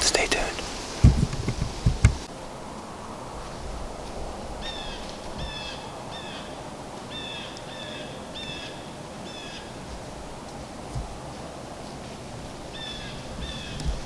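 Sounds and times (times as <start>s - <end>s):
faint hush of woods: 0.0s - 2.3s.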